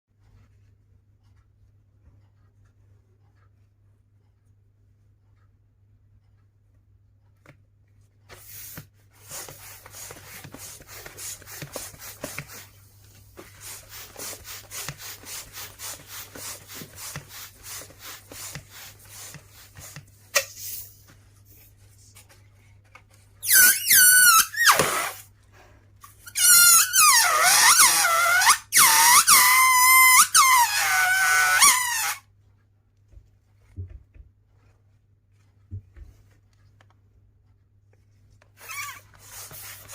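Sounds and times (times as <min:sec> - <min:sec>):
balloon being inflated: 0:08.3 - 0:21.1, 0:23.4 - 0:25.3, 0:26.1 - 0:32.3, 0:38.5 - 0:39.9
balloon rubber squeaking: 0:23.4 - 0:25.3, 0:26.1 - 0:32.3, 0:38.5 - 0:39.9.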